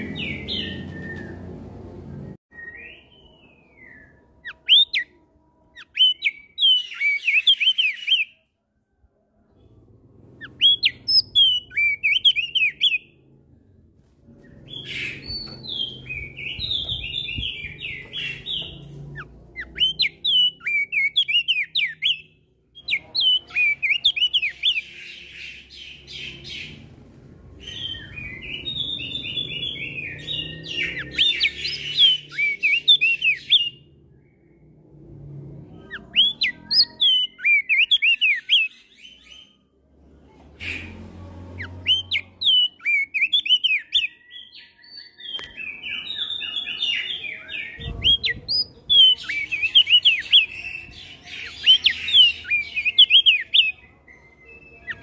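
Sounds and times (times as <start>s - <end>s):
other birds singing: 0.0s - 8.4s, 9.5s - 13.2s, 14.4s - 34.8s, 35.7s - 39.7s, 40.6s - 55.0s
bird chirping rapidly: 5.8s - 8.4s, 10.4s - 13.1s, 14.6s - 26.9s, 27.6s - 33.8s, 41.7s - 44.1s, 45.8s - 53.8s
faint low rumble: 8.6s - 11.8s, 47.8s - 49.2s.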